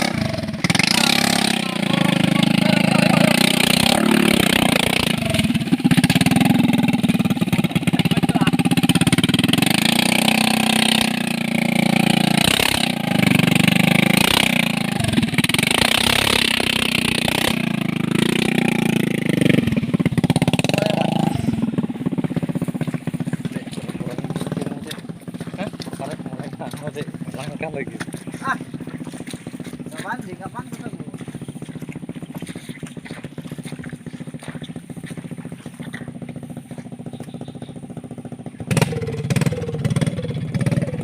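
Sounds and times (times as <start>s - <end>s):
vehicle engine revving: 0.0s - 41.0s.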